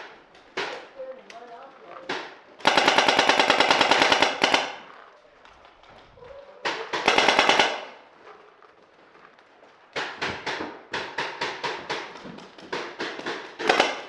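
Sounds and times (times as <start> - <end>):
paintball marker rapid fire: 2.1 - 5.0, 6.6 - 8.0, 9.9 - 14.0.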